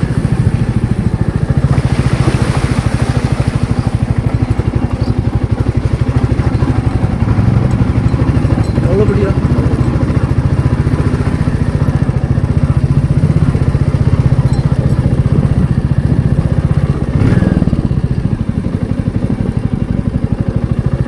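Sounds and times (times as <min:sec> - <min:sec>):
motorcycle engine running: 0:00.0 - 0:21.0.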